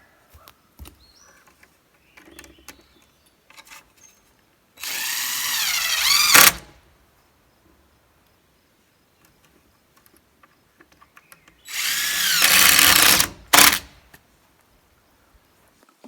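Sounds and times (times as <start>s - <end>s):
power drill driving screw: 4.8s - 6.8s, 11.7s - 14.0s.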